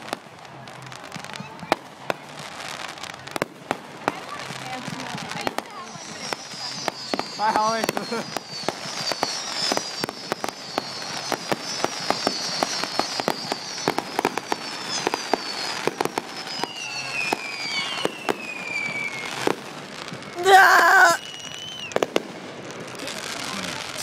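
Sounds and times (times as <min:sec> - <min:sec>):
fireworks popping and crackling: 0:00.0 - 0:24.0
firework whistles sliding down: 0:05.2 - 0:22.2.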